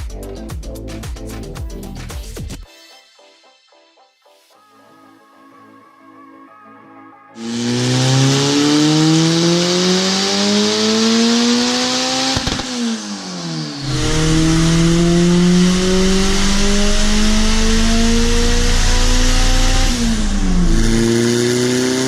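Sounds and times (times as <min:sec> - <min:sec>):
car engine accelerating hard: 0:07.4 - 0:22.0.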